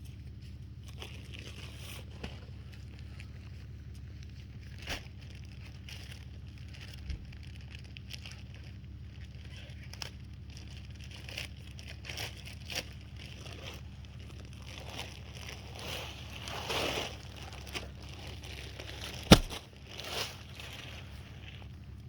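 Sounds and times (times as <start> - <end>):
bags crinkling and rustling: 0.7 - 22.0
steady low hum: 12.1 - 22.0.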